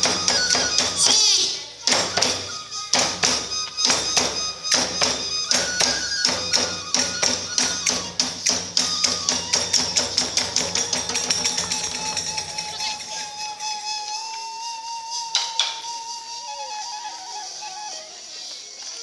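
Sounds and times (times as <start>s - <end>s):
fast driving drum strokes: 0.0s - 13.8s
hand cymbals clashing: 0.0s - 13.8s
held flute line: 0.0s - 19.0s.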